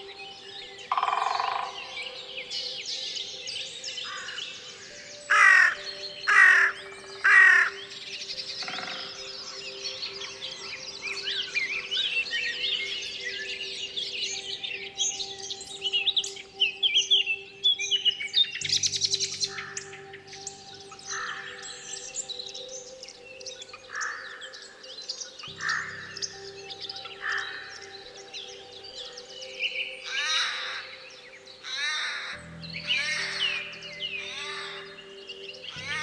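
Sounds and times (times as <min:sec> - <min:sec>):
songbirds chirping and trilling: 0:00.0 - 0:36.0
crow cawing: 0:25.6 - 0:26.1.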